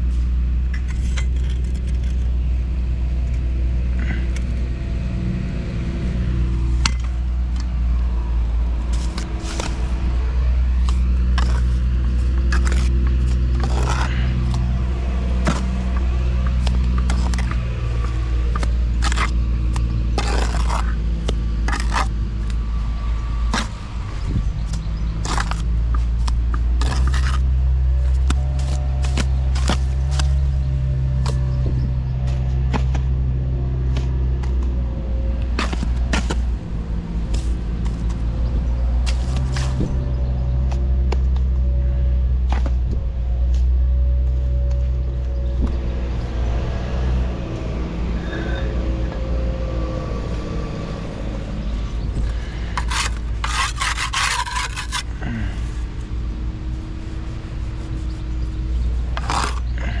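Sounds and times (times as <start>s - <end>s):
low engine drone: 0.0s - 60.0s
scraping knocks and clicks: 52.2s - 55.1s.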